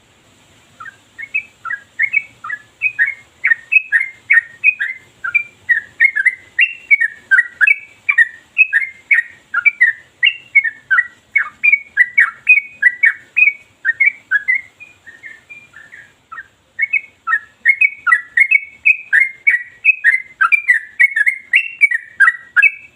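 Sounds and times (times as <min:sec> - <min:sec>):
bulbul singing: 0:00.7 - 0:22.9.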